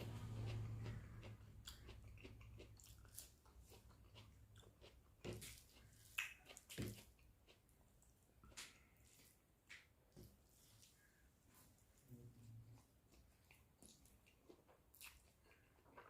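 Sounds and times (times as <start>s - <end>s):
chewing and biting food: 0.0s - 9.0s, 12.4s - 16.0s.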